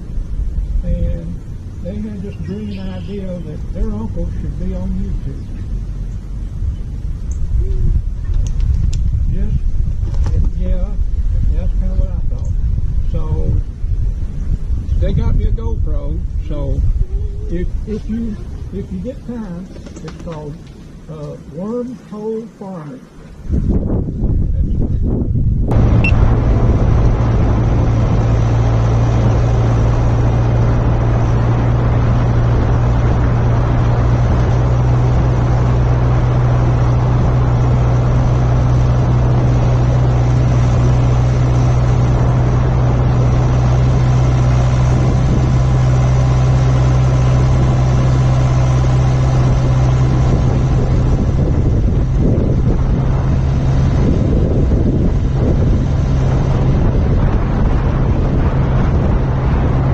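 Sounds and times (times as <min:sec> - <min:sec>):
tractor diesel engine running: 0:00.0 - 0:11.5, 0:25.6 - 0:59.9.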